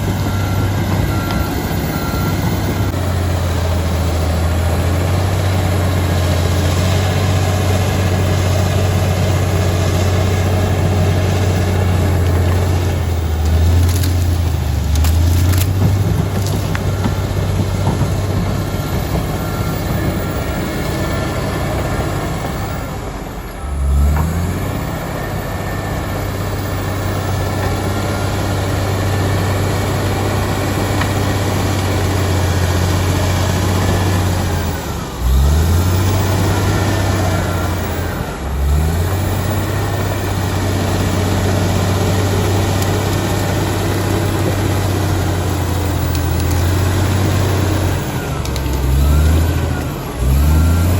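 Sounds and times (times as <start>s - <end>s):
bulldozer diesel engine running: 0.0s - 50.9s.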